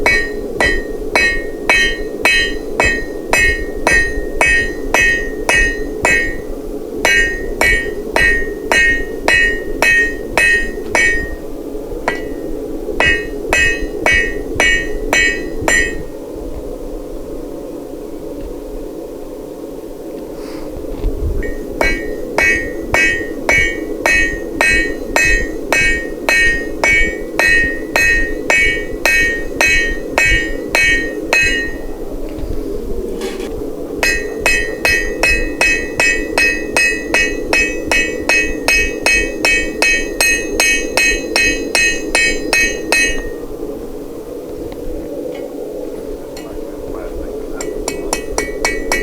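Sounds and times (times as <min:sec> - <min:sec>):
hammer striking steel on anvil: 0:00.0 - 0:11.5, 0:12.1 - 0:16.1, 0:21.4 - 0:31.9, 0:33.3 - 0:43.4, 0:47.6 - 0:49.0
low rushing noise: 0:00.0 - 0:49.0.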